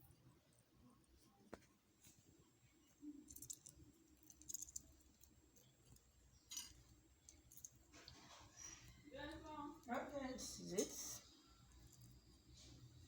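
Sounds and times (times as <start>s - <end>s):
faint clicks and crackles: 1.2s - 10.1s.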